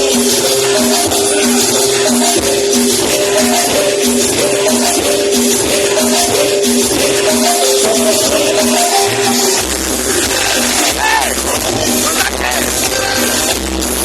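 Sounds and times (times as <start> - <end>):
held tone: 0.0 - 9.6
loud music over sound system: 0.0 - 14.0.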